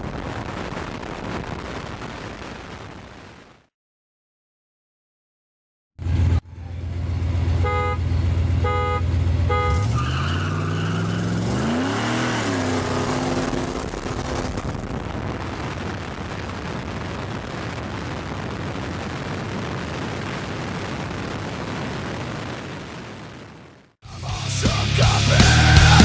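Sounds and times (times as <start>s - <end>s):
car engines idling: 6.0s - 11.8s, 12.4s - 16.4s
car engines revving hard: 6.0s - 15.8s
car horn toots: 7.4s - 10.7s.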